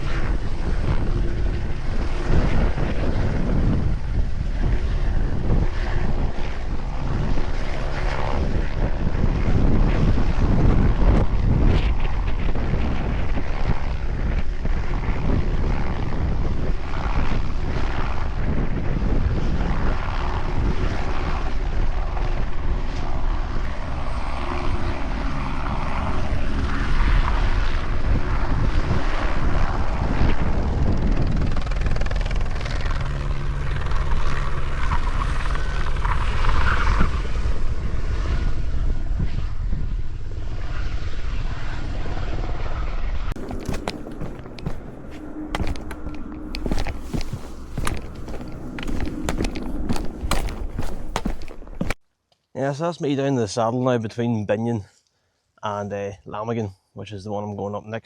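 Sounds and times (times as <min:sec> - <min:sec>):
wind noise on microphone: 0:00.0 - 0:22.8
helicopter rotor and engine: 0:00.0 - 0:34.8.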